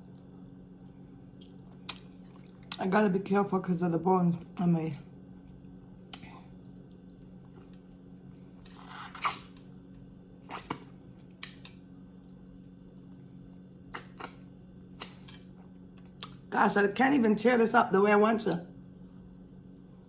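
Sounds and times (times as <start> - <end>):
wet chewing mouth sounds: 0.0 - 2.8, 5.3 - 16.5
low hum: 0.0 - 20.0.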